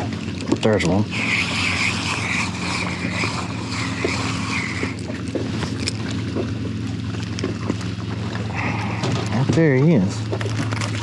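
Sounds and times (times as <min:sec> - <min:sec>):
low machine hum: 0:00.0 - 0:11.0
pulsing high-pitched buzz: 0:01.0 - 0:06.1.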